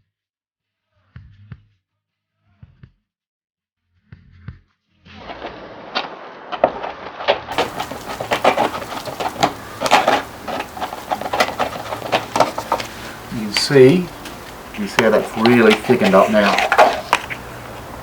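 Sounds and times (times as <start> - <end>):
wooden stick scraping in bucket: 5.3 - 18.0.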